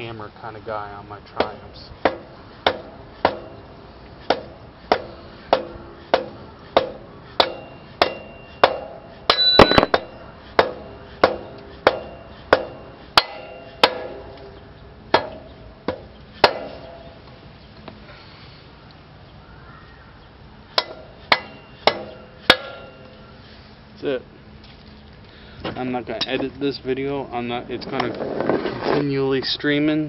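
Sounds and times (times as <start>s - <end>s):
rubber mallet tapping metal axle: 1.4s - 3.6s, 4.3s - 14.4s, 15.1s - 17.0s, 20.8s - 23.1s.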